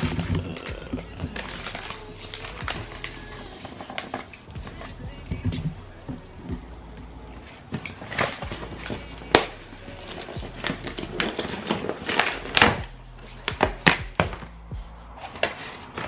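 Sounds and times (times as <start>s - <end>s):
background music: 4.6s - 7.6s, 8.4s - 15.5s.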